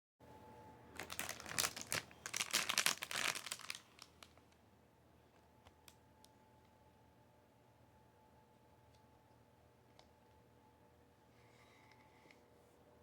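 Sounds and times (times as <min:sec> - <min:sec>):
packaging crinkling: 0:01.0 - 0:04.5.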